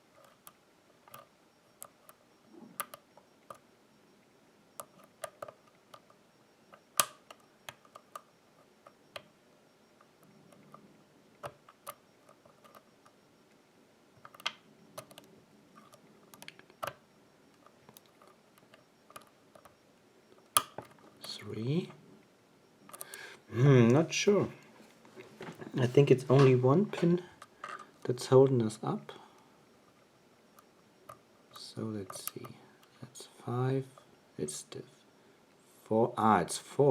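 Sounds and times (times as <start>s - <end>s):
lock pick clicking pins: 22.9s - 23.2s.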